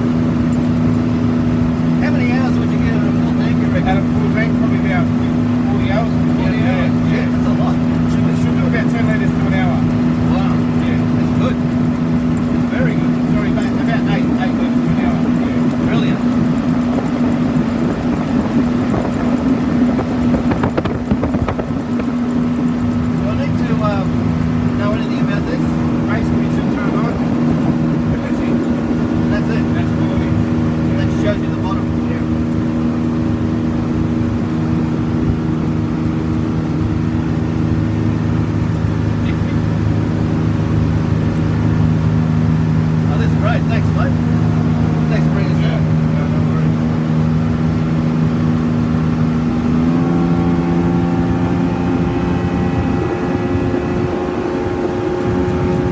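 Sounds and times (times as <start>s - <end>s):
motorboat engine running: 0.0s - 55.9s
wind buffeting microphone: 0.0s - 55.9s
sharp knocks: 20.3s - 22.2s.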